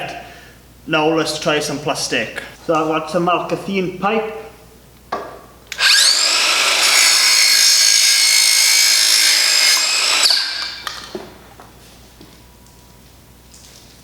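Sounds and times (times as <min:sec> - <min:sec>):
circular saw whining through pipe: 0:05.7 - 0:11.0.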